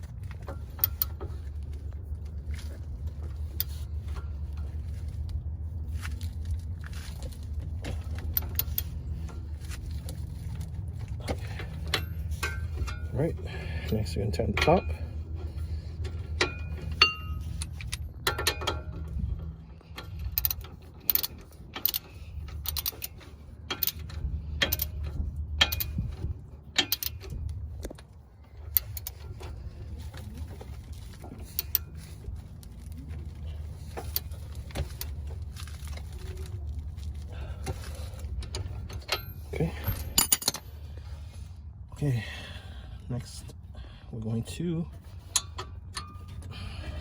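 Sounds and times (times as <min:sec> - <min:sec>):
steady low hum: 0:00.0 - 0:47.0
ratchet wrench clicking: 0:20.0 - 0:26.0.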